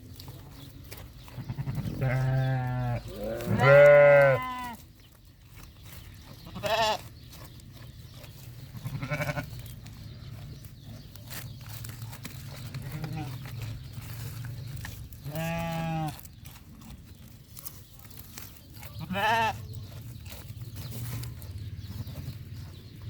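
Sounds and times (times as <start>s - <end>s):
goats and sheep bleating: 1.2s - 5.0s, 6.2s - 7.3s, 8.3s - 10.3s, 12.7s - 17.7s, 18.8s - 20.4s.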